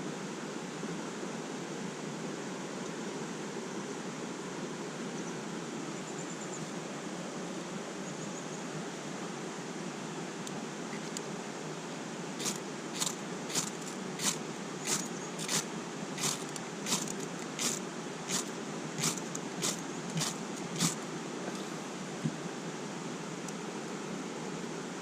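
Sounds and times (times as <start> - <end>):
mountain stream rushing: 11.3 - 22.6
short sharp strokes: 12.4 - 21.0.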